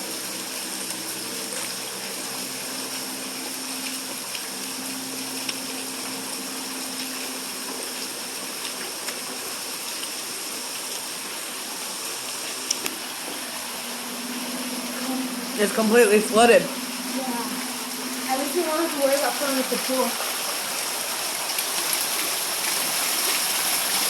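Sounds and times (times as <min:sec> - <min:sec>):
heavy rain pouring: 0:00.0 - 0:24.0
faint low hum: 0:13.1 - 0:20.3.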